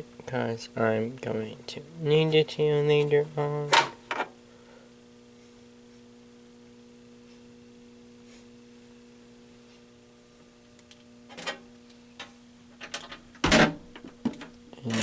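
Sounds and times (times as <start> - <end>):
steady electrical hum: 0.0 - 15.0.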